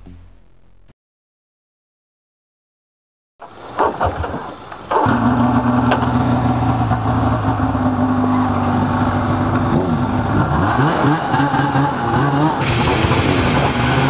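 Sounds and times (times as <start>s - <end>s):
snowmobile engine running: 3.5s - 14.0s.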